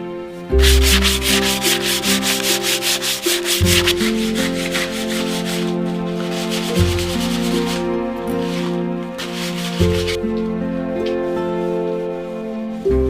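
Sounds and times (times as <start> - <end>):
soft background music: 0.0 - 13.0
wood sanded by hand: 0.5 - 10.2.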